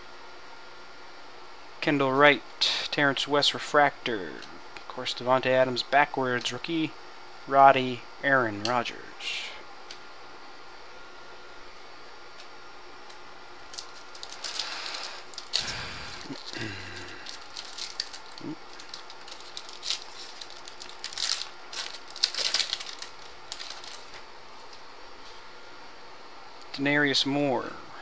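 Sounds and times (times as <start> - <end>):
trading cards rustling and sliding: 13.7 - 25.4.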